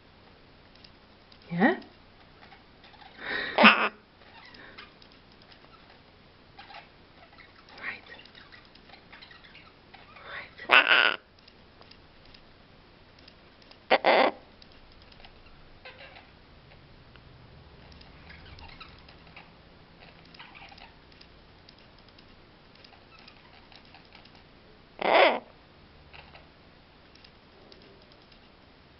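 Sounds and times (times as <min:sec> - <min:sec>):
faint scratchy clicks: 0:00.7 - 0:03.2, 0:04.2 - 0:06.0, 0:06.6 - 0:10.1, 0:11.3 - 0:12.5, 0:13.1 - 0:13.8, 0:14.6 - 0:15.5, 0:17.1 - 0:24.5, 0:27.1 - 0:28.6
parrot calling: 0:02.4 - 0:05.0, 0:06.6 - 0:11.3, 0:13.9 - 0:14.5, 0:15.2 - 0:16.8, 0:18.2 - 0:21.0, 0:22.9 - 0:24.3, 0:25.0 - 0:25.5, 0:26.1 - 0:26.6.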